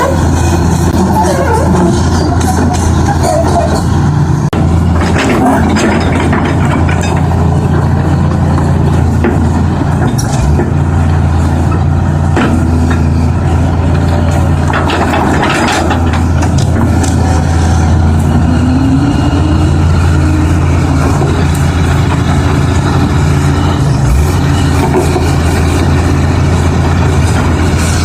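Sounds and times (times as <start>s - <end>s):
diesel engine humming: 0.0s - 28.0s.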